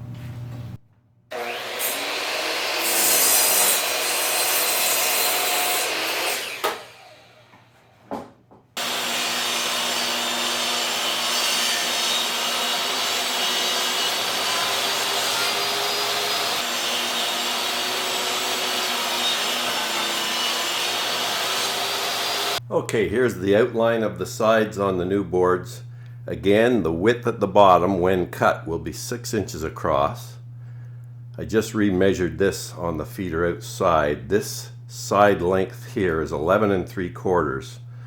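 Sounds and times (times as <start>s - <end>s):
power saw cutting wood: 1.3s - 7.8s, 8.8s - 22.6s.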